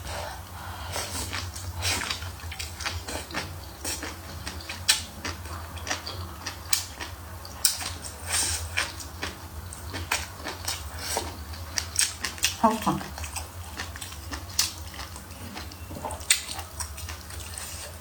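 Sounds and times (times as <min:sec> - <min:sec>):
wet chewing and slurping: 0:00.1 - 0:18.0.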